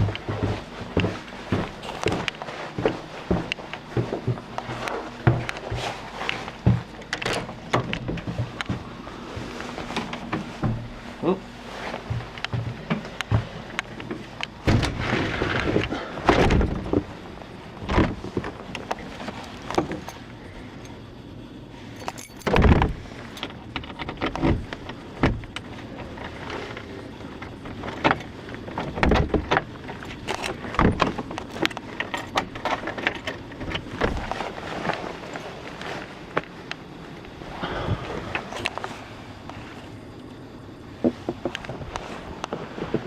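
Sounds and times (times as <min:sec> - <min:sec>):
knocks thumps and rattles: 0:06.6 - 0:11.1, 0:12.0 - 0:17.2, 0:17.8 - 0:18.6, 0:22.4 - 0:25.7, 0:27.6 - 0:34.3.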